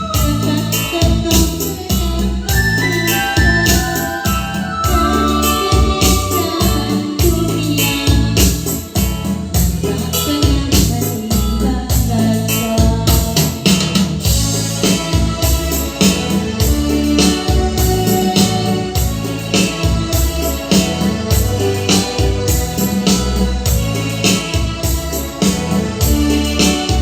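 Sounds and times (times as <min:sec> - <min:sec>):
music with steady beat: 0:00.0 - 0:27.0
pulsing bass line: 0:00.0 - 0:27.0.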